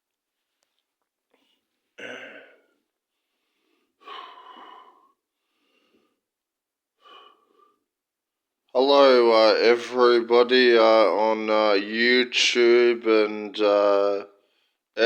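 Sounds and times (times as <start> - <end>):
man breathing heavily: 3.1 - 6.3, 7.0 - 7.9.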